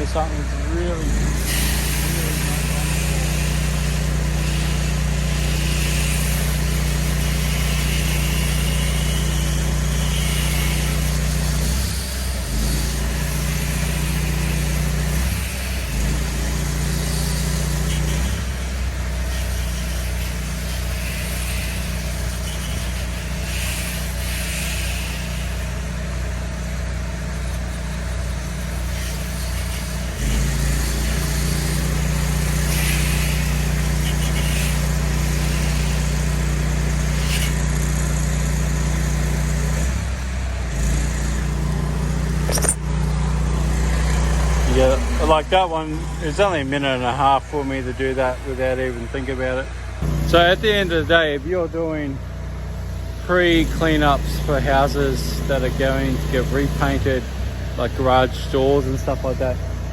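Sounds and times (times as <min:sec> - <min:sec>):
pressure washer engine running: 0:00.0 - 0:59.9.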